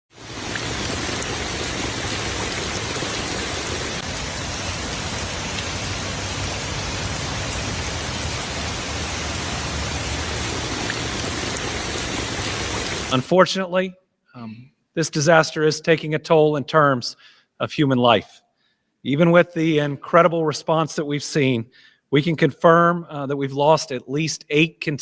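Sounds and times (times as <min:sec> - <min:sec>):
rain pouring: 0:00.1 - 0:13.3.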